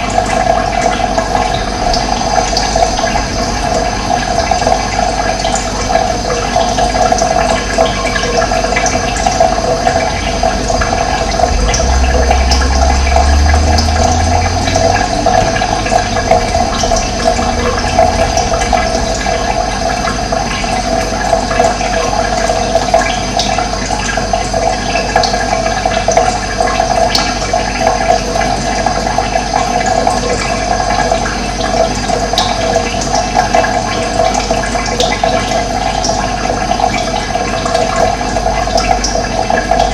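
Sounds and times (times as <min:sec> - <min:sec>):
running water rushing: 0:00.0 - 0:39.9
low rumble: 0:09.1 - 0:22.0.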